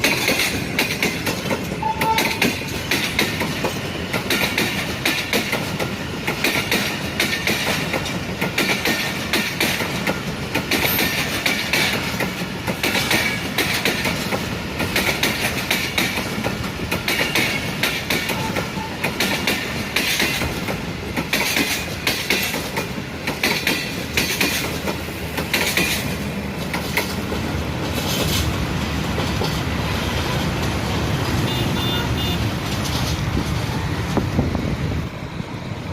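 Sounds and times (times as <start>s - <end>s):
train wheels clattering over rail joints: 0.0s - 31.4s, 32.4s - 35.9s.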